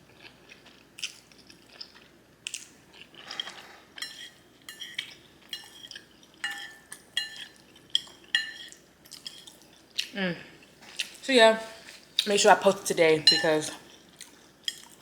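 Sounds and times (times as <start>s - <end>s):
fork scraping dish: 3.2s - 9.4s
metal fork clinking on dish: 4.0s - 8.7s, 13.2s - 13.7s.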